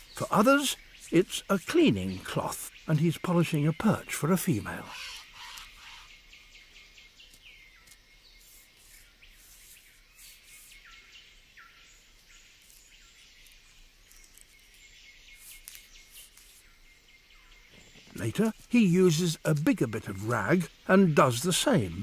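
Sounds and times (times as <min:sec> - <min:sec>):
scattered ticks: 0:00.1 - 0:05.9, 0:17.7 - 0:21.8
high insect buzz: 0:04.8 - 0:22.0.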